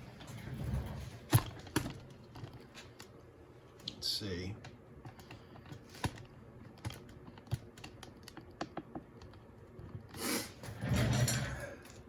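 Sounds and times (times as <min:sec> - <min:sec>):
small parts clicking and tapping: 0:04.6 - 0:10.2.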